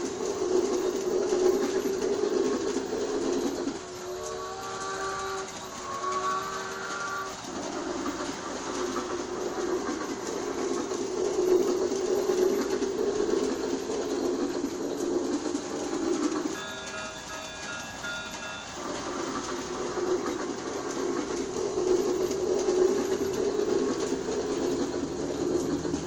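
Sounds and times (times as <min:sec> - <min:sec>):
toy train rumbling on track: 0:00.0 - 0:26.0
train whistle blasts: 0:03.9 - 0:07.3.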